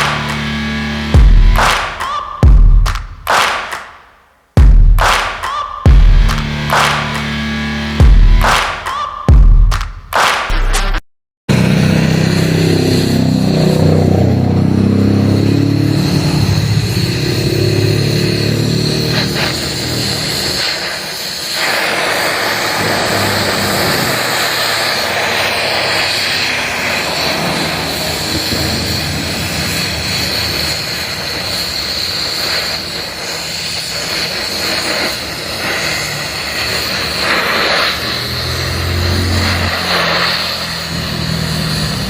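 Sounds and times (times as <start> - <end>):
power tool whining: 11.5 - 42.0.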